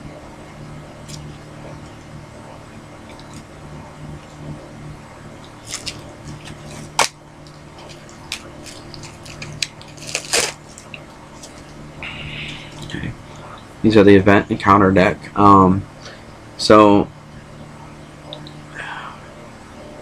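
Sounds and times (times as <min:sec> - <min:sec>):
steady low hum: 0:00.0 - 0:20.0
sharp clicks of card packaging: 0:05.6 - 0:07.2, 0:07.8 - 0:11.6.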